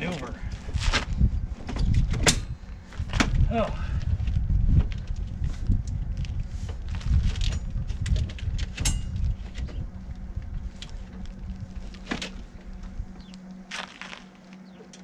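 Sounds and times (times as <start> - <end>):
faint steady hum: 0.0 - 15.0
low rumble: 0.0 - 15.0
cable clicks knocks and scraping: 4.7 - 9.8.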